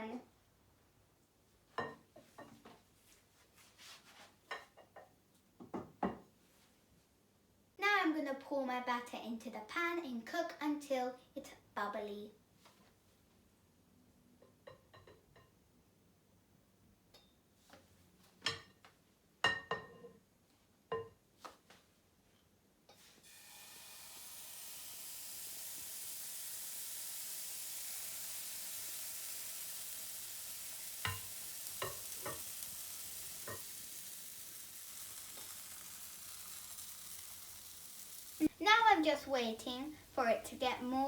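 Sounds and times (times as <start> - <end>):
pancake batter sizzling in a pan: 23.0 - 41.0.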